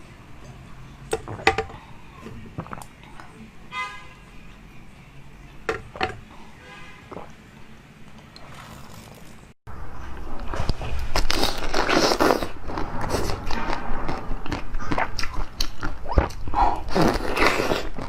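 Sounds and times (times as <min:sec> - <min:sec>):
person chewing crunchy food: 0:10.7 - 0:18.0.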